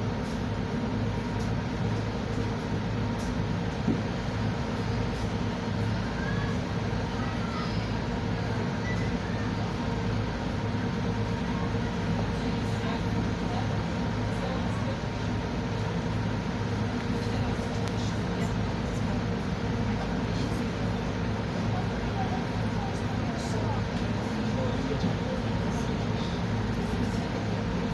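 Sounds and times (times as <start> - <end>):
boat engine droning: 0.0 - 27.9.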